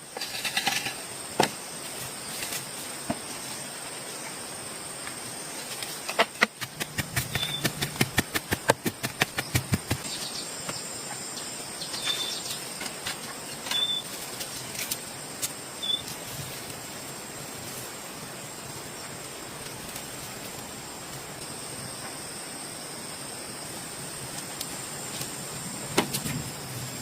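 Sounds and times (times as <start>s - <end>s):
constant high whine: 0.0s - 27.0s
steady hiss: 0.0s - 27.0s.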